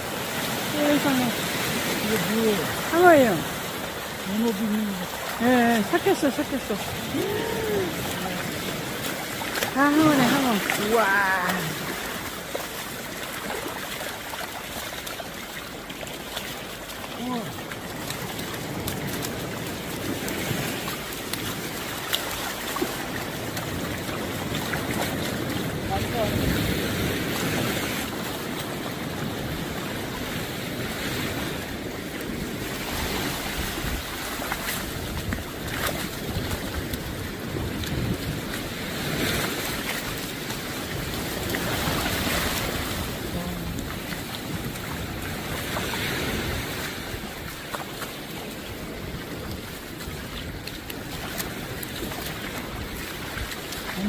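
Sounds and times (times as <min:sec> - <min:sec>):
wind buffeting microphone: 0:00.0 - 0:12.0, 0:22.8 - 0:47.7
faint small splashes: 0:00.0 - 0:29.6, 0:31.1 - 0:54.0
water trickling: 0:00.0 - 0:30.0
sea surf washing on beach: 0:00.0 - 0:54.0.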